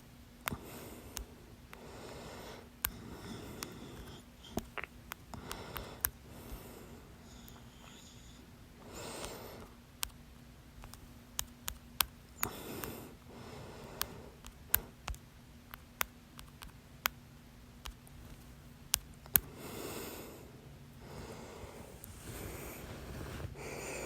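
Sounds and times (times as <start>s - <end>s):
breaths: 0.5s - 4.7s, 5.3s - 9.7s, 12.4s - 14.4s, 19.4s - 24.0s.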